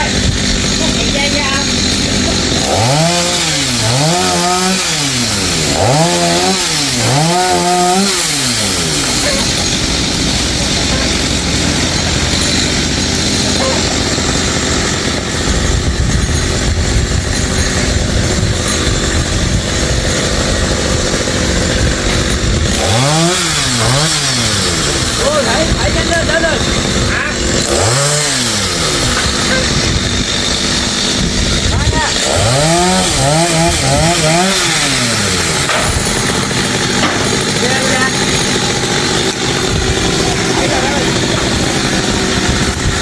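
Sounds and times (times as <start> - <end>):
chainsaw cutting wood: 0.0 - 43.0.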